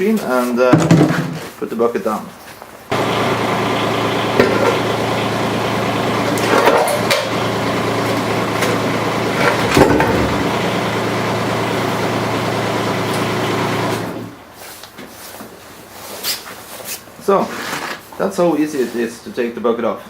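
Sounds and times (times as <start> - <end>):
diesel engine running: 2.9 - 14.5
excavator bucket clunks: 8.1 - 10.7.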